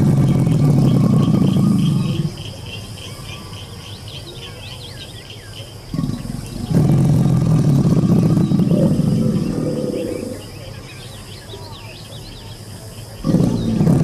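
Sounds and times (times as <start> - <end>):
alligator rumbling growl: 0.0 - 2.6, 5.9 - 10.7, 13.2 - 14.0
birds chirping faintly: 0.0 - 14.0.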